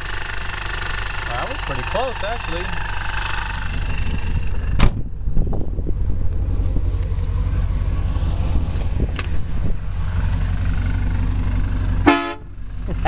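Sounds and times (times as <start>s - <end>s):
car engine rumbling: 0.0s - 13.0s
wind buffeting microphone: 3.6s - 10.9s.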